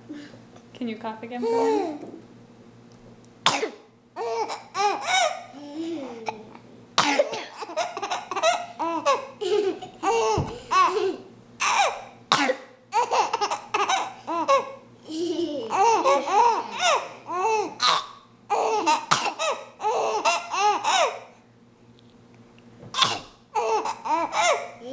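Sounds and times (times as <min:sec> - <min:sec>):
baby giggling: 0:01.4 - 0:02.2, 0:04.2 - 0:12.0, 0:12.9 - 0:21.2, 0:23.6 - 0:24.9
baby coughing: 0:03.4 - 0:05.4, 0:07.0 - 0:14.7, 0:15.7 - 0:21.3, 0:22.9 - 0:24.8.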